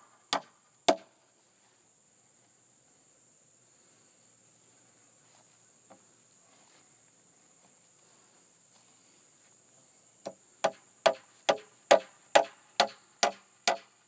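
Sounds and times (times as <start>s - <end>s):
hammer striking a nail into wood: 10.2s - 13.9s.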